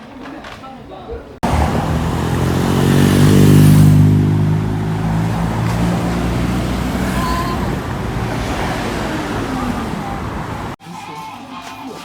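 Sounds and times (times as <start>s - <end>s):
vehicle engine running: 1.4s - 10.8s.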